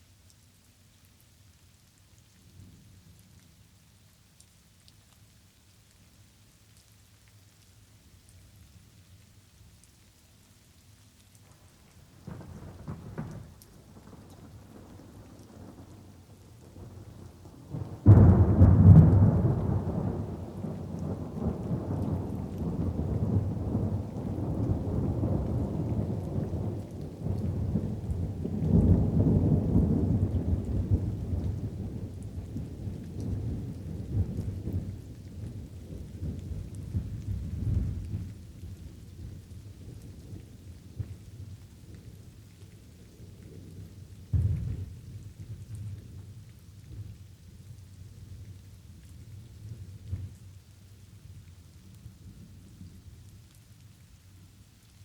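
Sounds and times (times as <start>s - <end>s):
rain pattering: 0.0s - 55.0s
thunder rumbling: 16.7s - 38.4s, 44.3s - 46.2s.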